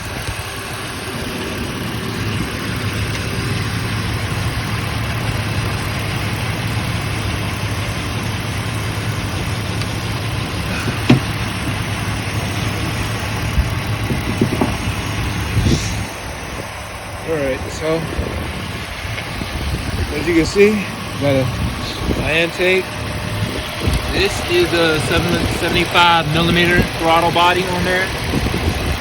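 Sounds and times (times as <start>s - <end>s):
car engine idling: 0.0s - 29.0s
short knocks: 10.7s - 12.0s, 14.0s - 15.1s.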